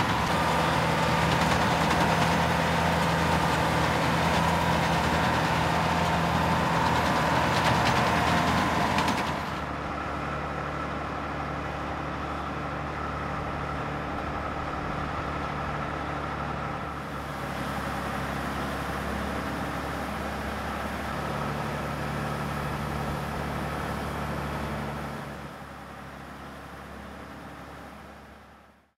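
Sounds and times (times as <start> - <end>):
combine harvester engine running: 0.0 - 28.7.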